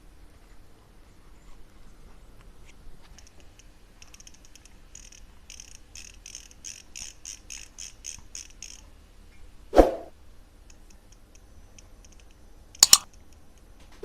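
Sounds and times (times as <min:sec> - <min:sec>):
sewing machine parts clicking: 0:12.8 - 0:13.0.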